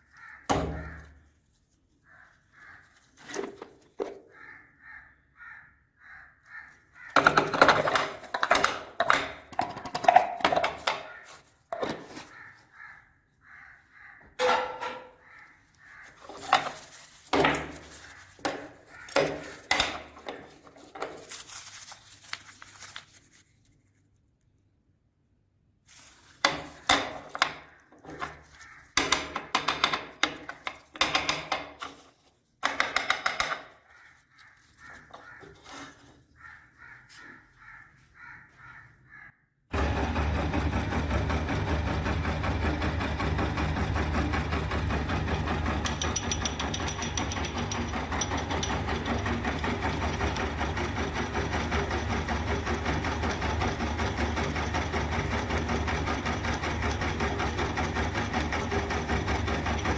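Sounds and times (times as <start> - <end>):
meat grinder motor whirring: 39.7 - 59.9.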